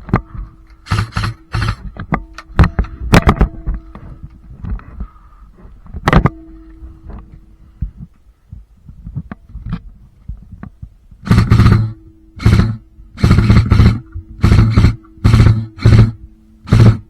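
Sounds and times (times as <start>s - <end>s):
thuds and rustling of movement: 0.0s - 11.0s
steady hum: 0.0s - 17.0s.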